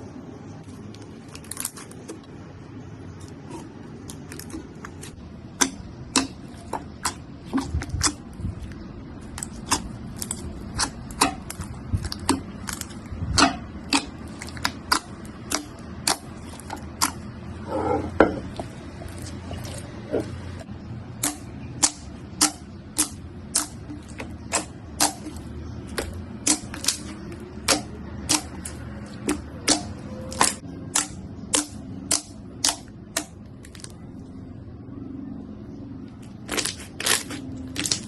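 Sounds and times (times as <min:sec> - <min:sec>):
low steady hum: 0:00.0 - 0:38.0
slime squelch: 0:00.6 - 0:34.4, 0:35.9 - 0:38.0
slime popping and crackling: 0:09.3 - 0:17.3, 0:21.2 - 0:33.9, 0:36.4 - 0:38.0.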